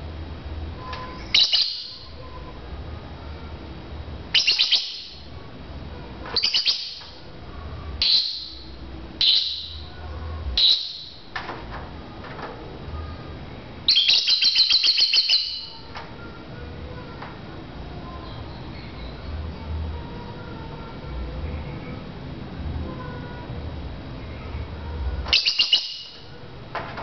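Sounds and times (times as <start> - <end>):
lovebird chirping: 1.2 - 2.1, 4.3 - 5.2, 6.4 - 7.2, 8.0 - 9.9, 10.6 - 11.2, 13.9 - 15.8, 25.3 - 26.3.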